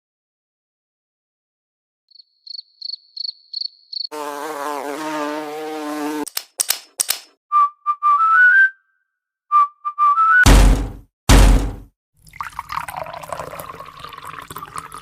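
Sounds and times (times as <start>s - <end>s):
sharp clicks: 6.3s - 7.3s
short whistled notes: 7.5s - 10.5s.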